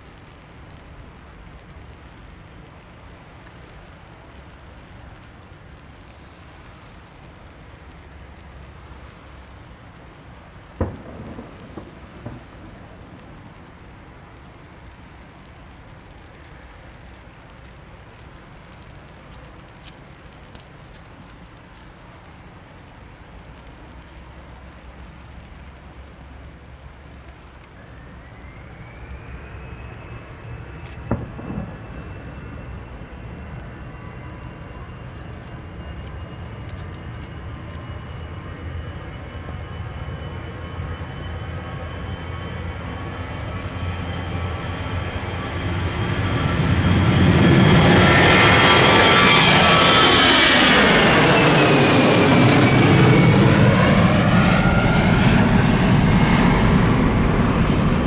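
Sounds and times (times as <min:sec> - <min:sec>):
jet engines roaring: 0:08.2 - 0:17.2, 0:24.5 - 0:58.0.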